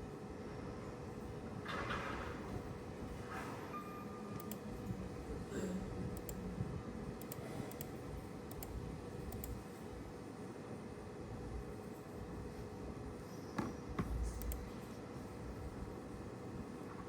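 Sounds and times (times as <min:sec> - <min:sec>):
faint clicks: 0:08.5 - 0:09.6.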